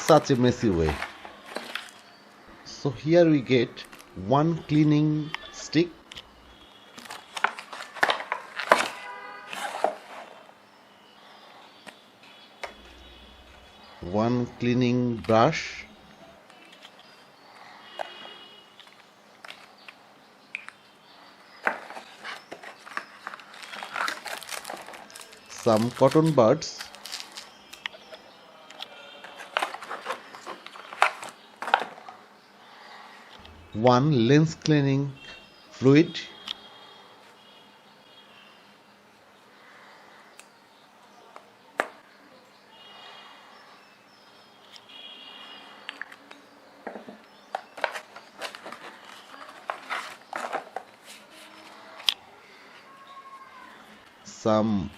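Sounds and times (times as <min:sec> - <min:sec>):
plastic packaging clicks and rustles: 0:00.9 - 0:02.1, 0:06.9 - 0:10.4, 0:21.5 - 0:32.2, 0:45.9 - 0:52.2.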